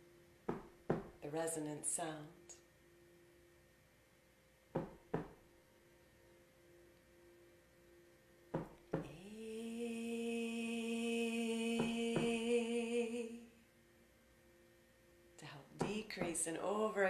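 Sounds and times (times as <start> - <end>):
woman humming steady tone: 6.1 - 17.0.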